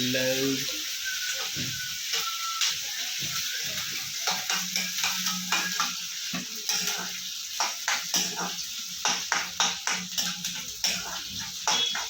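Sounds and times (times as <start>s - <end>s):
onion sizzling in hot oil: 0.0s - 12.0s
spatula scraping and knocking pan: 1.4s - 12.0s.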